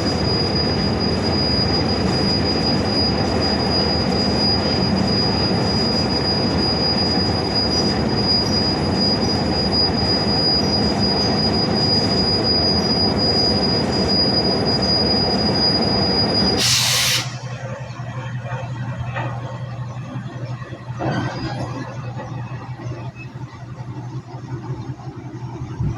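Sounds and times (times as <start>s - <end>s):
high-pitched whine: 0.0s - 18.0s
loud hiss: 16.6s - 17.6s.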